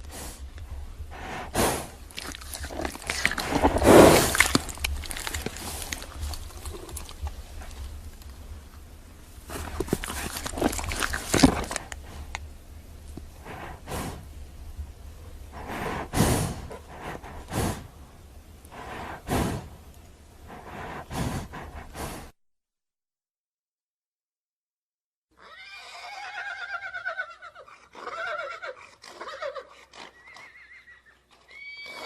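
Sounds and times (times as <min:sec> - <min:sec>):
horses blowing through nostrils: 0:00.0 - 0:08.6, 0:09.3 - 0:12.4, 0:13.2 - 0:14.4, 0:15.5 - 0:18.0, 0:18.7 - 0:19.8, 0:20.5 - 0:22.4
rustling: 0:00.0 - 0:22.3.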